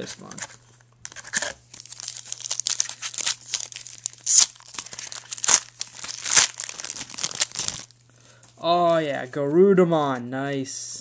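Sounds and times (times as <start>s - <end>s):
wrapper crinkling and tearing: 0.0s - 8.0s.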